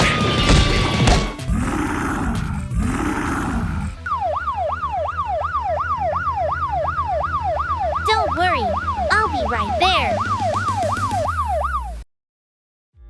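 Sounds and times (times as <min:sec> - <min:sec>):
long roars: 0:01.4 - 0:04.1
emergency siren yelping: 0:03.1 - 0:12.0.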